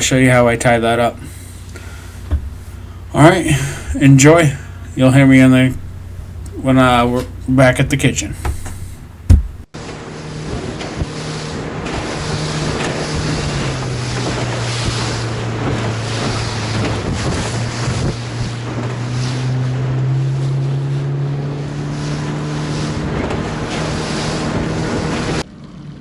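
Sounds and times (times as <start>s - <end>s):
water rushing past: 0.0s - 25.4s
motorboat engine running: 0.0s - 26.0s
wind buffeting microphone: 0.7s - 9.7s, 10.4s - 20.6s.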